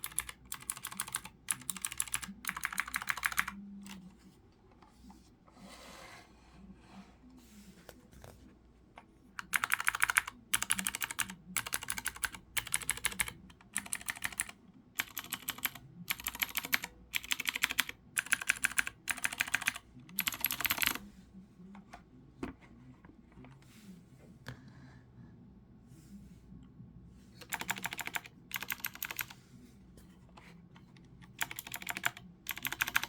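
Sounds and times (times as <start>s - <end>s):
mechanical keyboard typing: 0.0s - 4.0s, 9.4s - 21.0s, 27.4s - 29.4s, 31.2s - 33.0s.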